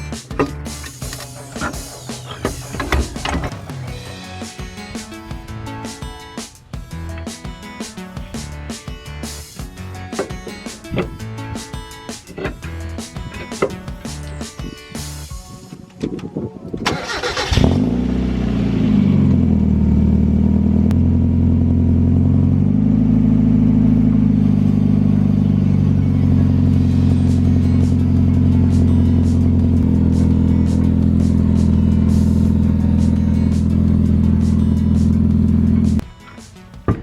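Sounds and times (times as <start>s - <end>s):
car engine starting and idling: 0.0s - 5.8s, 16.8s - 36.0s.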